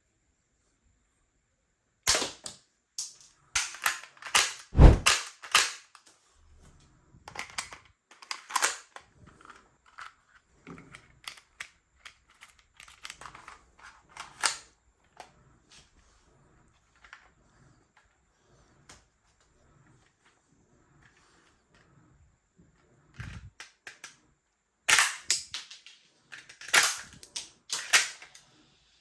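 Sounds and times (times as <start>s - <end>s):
toy gun plastic snaps: 2.1s - 6.1s, 7.3s - 9.1s, 14.1s - 14.7s, 23.2s - 24.2s, 24.9s - 28.4s.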